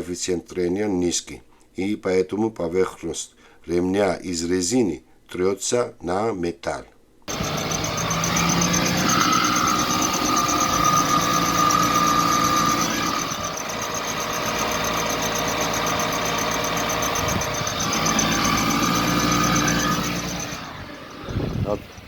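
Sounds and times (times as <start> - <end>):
car engine idling: 7.3 - 22.0
drive belt squealing: 7.3 - 22.0.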